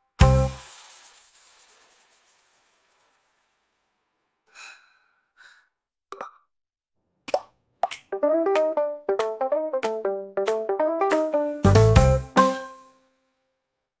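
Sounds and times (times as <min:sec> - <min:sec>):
music: 0:00.2 - 0:00.6, 0:08.1 - 0:13.2
soft breath-like sounds: 0:04.5 - 0:05.8.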